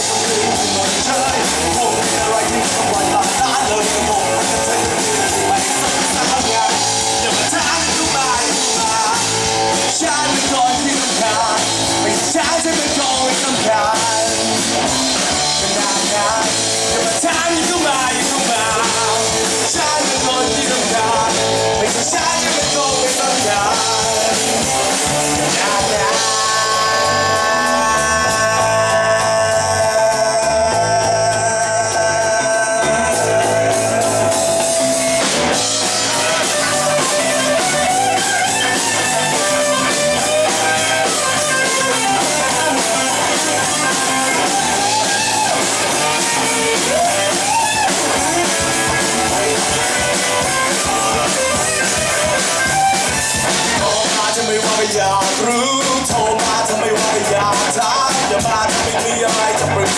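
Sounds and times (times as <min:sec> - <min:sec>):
live rock band playing: 0:00.0 - 0:59.9
electric guitar melody bending: 0:32.0 - 0:54.6.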